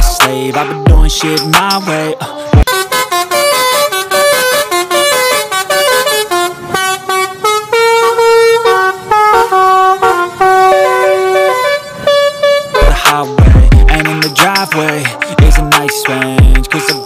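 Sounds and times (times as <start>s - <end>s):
bus horn playing a tune: 2.2s - 13.4s, 14.5s - 16.3s.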